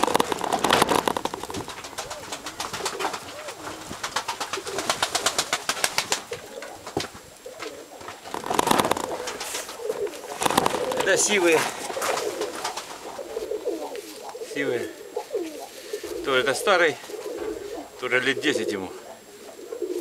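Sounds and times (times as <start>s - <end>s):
clicks and rustling: 0.0s - 14.5s
pigeons cooing: 0.0s - 20.0s.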